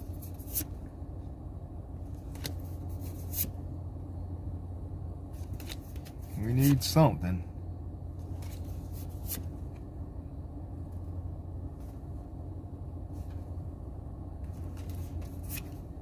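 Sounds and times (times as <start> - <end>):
low hum: 0.0 - 16.0
trading cards being flipped: 0.1 - 0.7, 2.2 - 3.6, 5.4 - 6.8, 8.2 - 9.6, 14.5 - 15.8.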